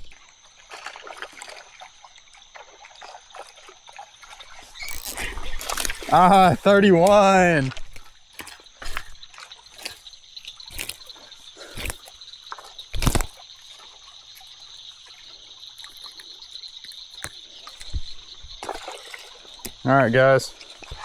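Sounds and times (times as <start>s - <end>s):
creek water trickling: 0.0s - 21.0s.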